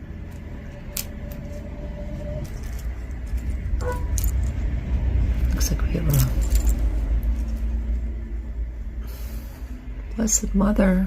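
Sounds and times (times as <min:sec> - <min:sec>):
steady low rumble: 0:00.0 - 0:11.0
metal jewelry clinking: 0:02.2 - 0:07.8.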